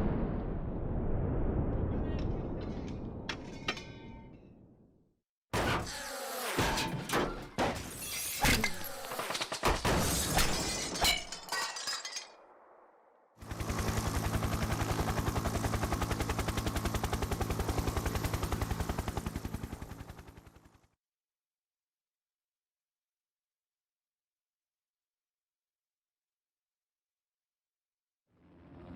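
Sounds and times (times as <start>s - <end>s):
crashing and shattering: 5.6s - 12.6s.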